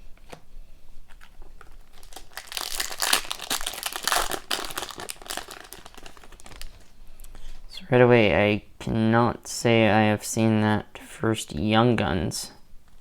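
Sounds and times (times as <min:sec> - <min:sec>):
foil wrapper crinkling: 0:01.1 - 0:07.0.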